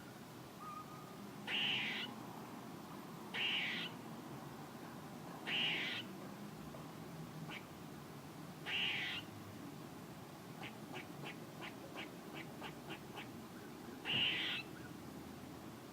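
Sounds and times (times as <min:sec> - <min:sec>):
squirrel harsh raspy calls: 0:01.5 - 0:02.1, 0:03.3 - 0:04.0, 0:05.4 - 0:06.1, 0:07.5 - 0:07.7, 0:08.6 - 0:09.3, 0:10.6 - 0:13.4, 0:14.0 - 0:14.9.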